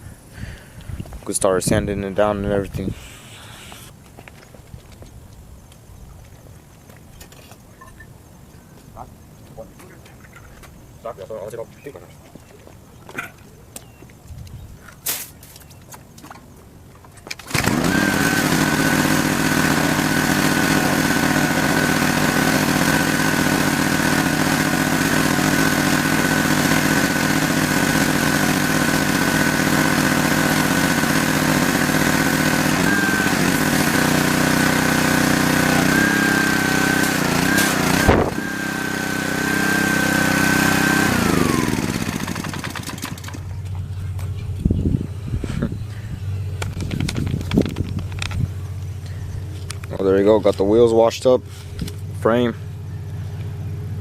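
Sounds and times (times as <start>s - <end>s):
pressure washer motor whining: 2.7s - 3.9s, 17.5s - 43.8s
water spray hissing: 2.8s - 4.0s.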